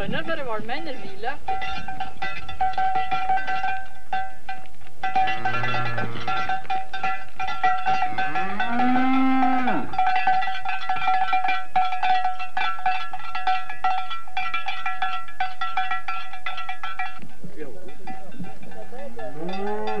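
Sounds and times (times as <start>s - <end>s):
cowbells ringing and clanking: 0.0s - 20.0s
cow mooing: 5.2s - 6.5s, 8.0s - 10.0s, 19.3s - 20.0s.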